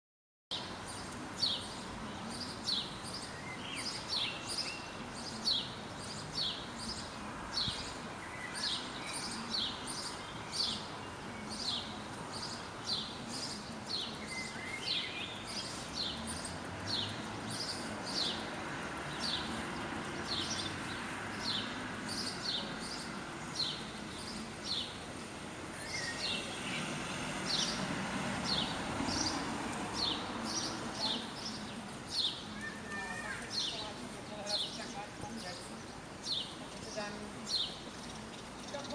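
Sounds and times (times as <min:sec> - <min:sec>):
bird chirping: 0:00.5 - 0:25.0, 0:25.7 - 0:38.9
outdoor background hiss: 0:00.5 - 0:38.9.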